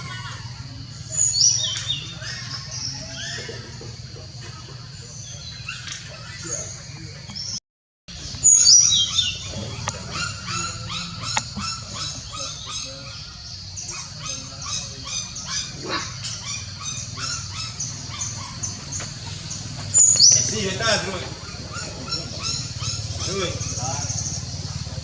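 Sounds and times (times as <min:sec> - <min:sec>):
puppies whining and yelping: 0:09.0 - 0:23.8.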